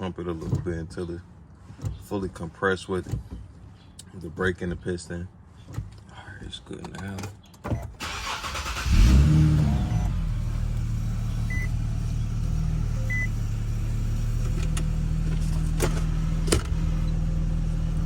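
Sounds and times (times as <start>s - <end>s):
car engine starting and idling: 7.8s - 18.0s.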